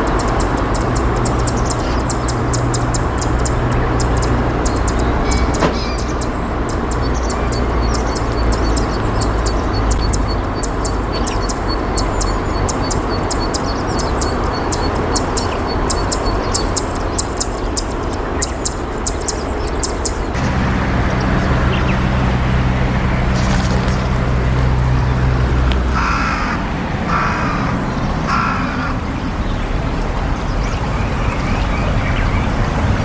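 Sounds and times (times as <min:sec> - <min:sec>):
faint high ticking: 0:20.4 - 0:28.8
low hum: 0:20.4 - 0:29.9
river water rushing: 0:20.4 - 0:33.0.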